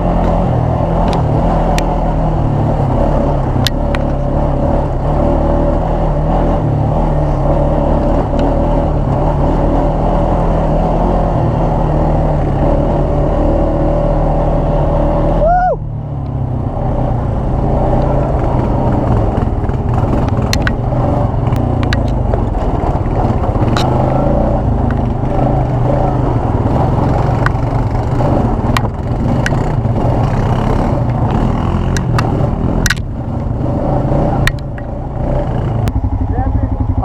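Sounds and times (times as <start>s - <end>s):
atv engine running: 0.0s - 37.0s
sharp knocks and clatter: 18.0s - 24.2s, 27.0s - 33.2s.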